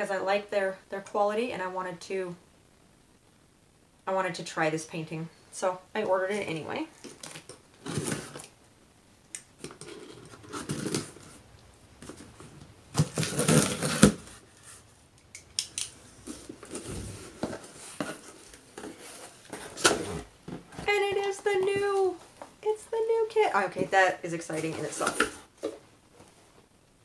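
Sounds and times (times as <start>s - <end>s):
packaging rustling and crinkling: 7.0s - 8.6s, 9.6s - 11.4s, 12.0s - 14.8s, 16.1s - 22.3s.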